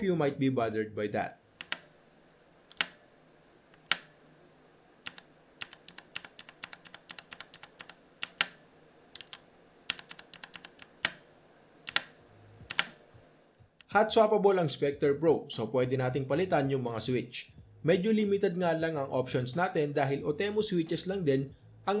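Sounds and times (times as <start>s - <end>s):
mechanical keyboard keystrokes: 5.1s - 8.6s, 9.2s - 11.2s, 11.9s - 12.1s, 12.7s - 13.0s.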